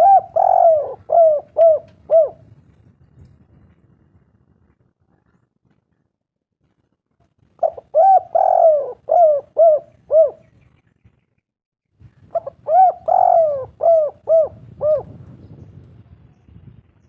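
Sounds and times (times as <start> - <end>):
dove cooing: 0.0 - 2.5, 7.6 - 10.5, 12.3 - 15.2.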